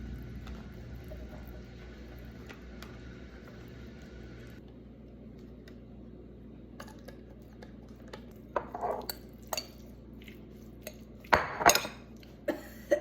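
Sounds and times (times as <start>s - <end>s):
dishes and utensils clattering: 8.6s - 9.8s, 11.3s - 12.1s.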